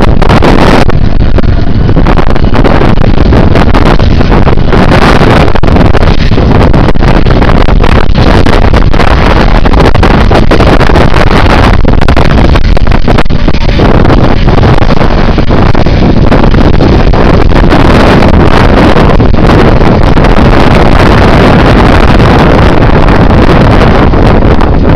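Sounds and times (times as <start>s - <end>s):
wind buffeting microphone: 0.0s - 24.9s.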